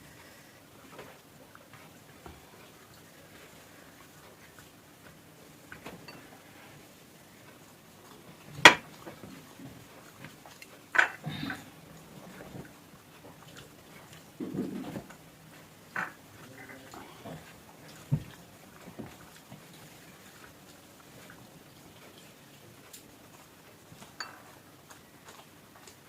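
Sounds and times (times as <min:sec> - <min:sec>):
chewing food: 0:07.4 - 0:26.0.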